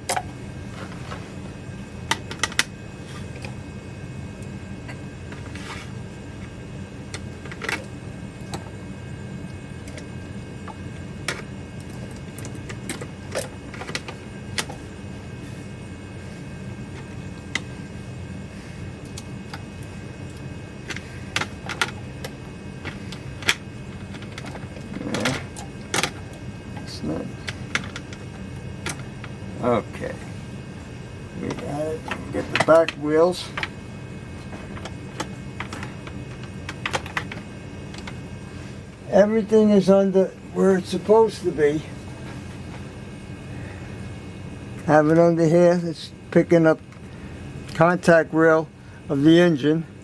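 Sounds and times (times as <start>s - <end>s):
low background hum: 0.0s - 50.0s
small parts clicking and tapping: 2.1s - 2.7s, 20.3s - 26.3s, 27.4s - 29.4s, 34.7s - 38.2s.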